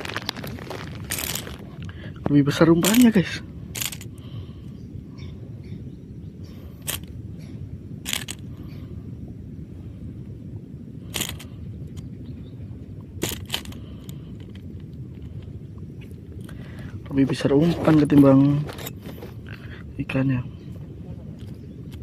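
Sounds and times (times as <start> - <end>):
low rumble of wind or surf: 0.0 - 22.0
fishing tackle clicks and knocks: 0.1 - 1.6, 3.8 - 4.2, 8.1 - 8.4, 13.2 - 15.5.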